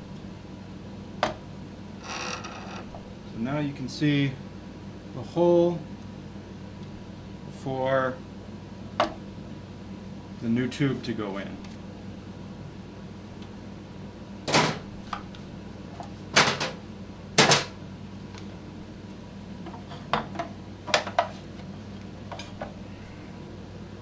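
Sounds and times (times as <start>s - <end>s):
steady low hum: 0.0s - 24.0s
tools knocking and clattering: 16.4s - 16.8s.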